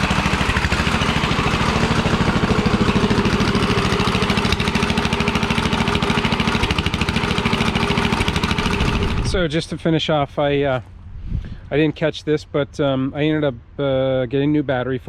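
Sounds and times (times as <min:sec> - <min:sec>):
single-cylinder engine running: 0:00.0 - 0:09.8.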